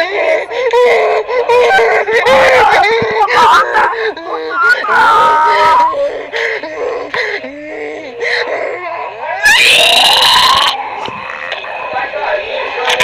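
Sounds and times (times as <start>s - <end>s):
child crying and wailing: 0.0s - 10.5s
child screaming: 1.0s - 6.1s, 9.4s - 10.8s.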